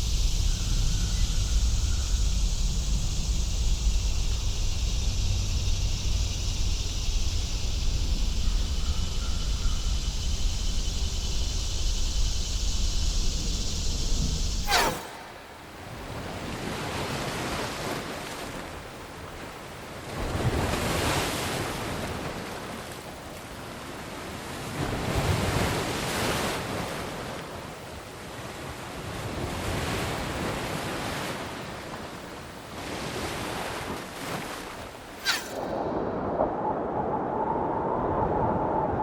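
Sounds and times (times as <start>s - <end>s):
surf hiss: 0.0s - 39.0s
waves breaking: 14.6s - 39.0s.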